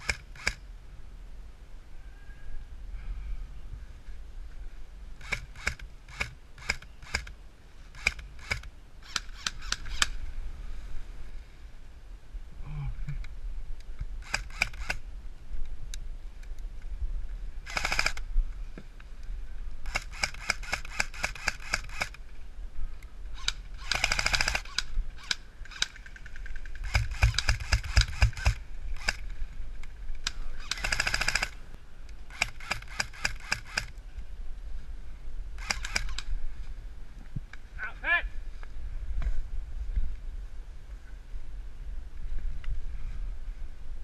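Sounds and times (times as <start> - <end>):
airsoft guns firing bursts: 17.6 - 18.2, 19.9 - 22.2, 23.4 - 29.2, 30.6 - 31.6, 32.3 - 33.9, 35.6 - 36.2.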